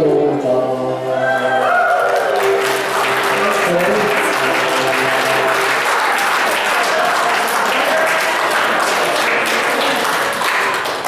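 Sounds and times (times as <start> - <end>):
dance tune: 0.1 - 6.9
crowd applauding: 1.6 - 11.0.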